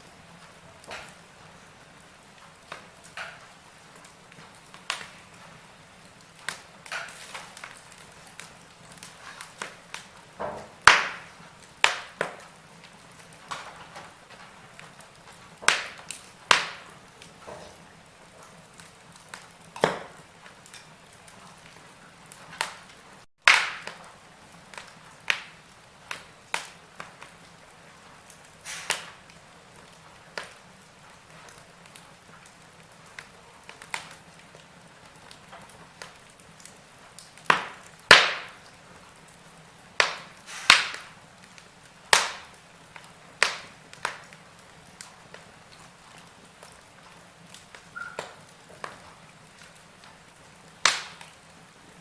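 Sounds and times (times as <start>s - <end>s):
wood fire crackling and popping: 0.0s - 52.0s
faint hiss: 28.6s - 29.3s, 39.8s - 43.4s.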